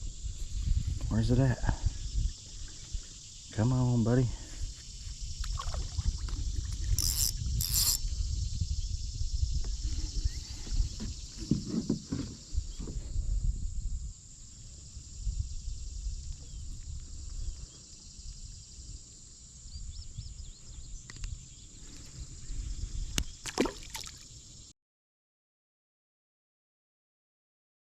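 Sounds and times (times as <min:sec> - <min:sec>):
kayak knocks and rumbling: 0:05.4 - 0:07.0, 0:10.7 - 0:13.2.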